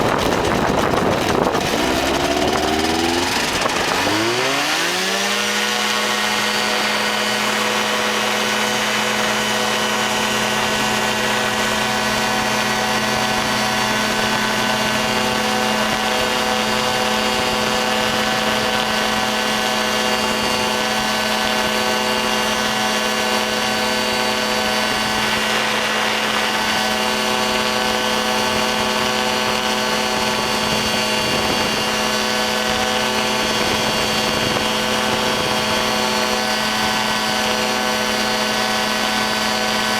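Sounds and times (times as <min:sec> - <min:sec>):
ultralight aircraft engine drone: 0:00.0 - 0:39.9.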